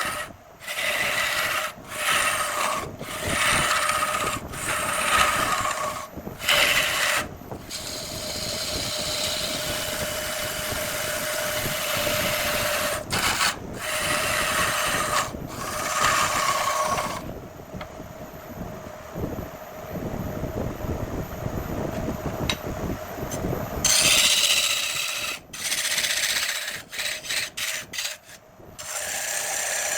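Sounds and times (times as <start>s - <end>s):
tool scraping spinning wood: 0.0s - 17.3s, 23.8s - 29.9s
wood lathe motor hum: 0.0s - 17.3s, 23.8s - 29.9s.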